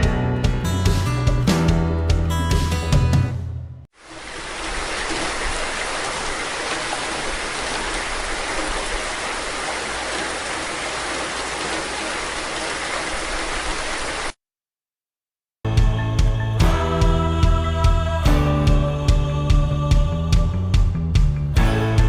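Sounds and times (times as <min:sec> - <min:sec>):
steady rain hiss: 0:04.0 - 0:14.4.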